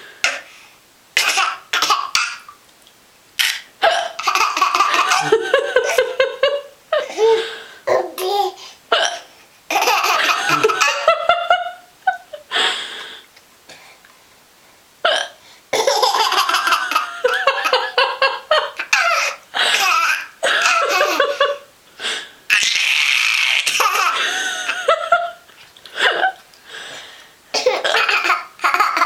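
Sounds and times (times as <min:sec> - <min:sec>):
baby laughing: 0:01.2 - 0:02.5, 0:03.4 - 0:06.3, 0:07.0 - 0:08.6, 0:09.7 - 0:11.3, 0:15.8 - 0:21.7, 0:22.5 - 0:25.4, 0:27.6 - 0:29.0.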